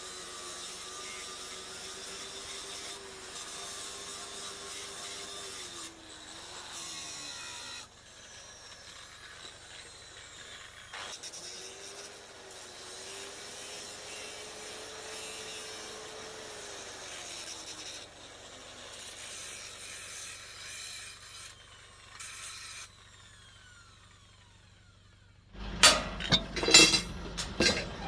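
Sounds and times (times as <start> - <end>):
metal being scraped: 25.6 - 28.0.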